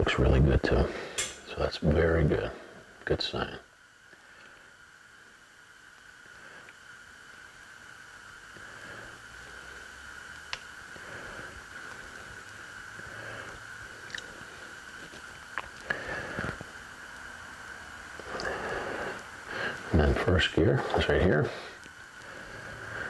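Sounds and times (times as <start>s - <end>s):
metal gears clicking when handled: 1.2s - 1.5s.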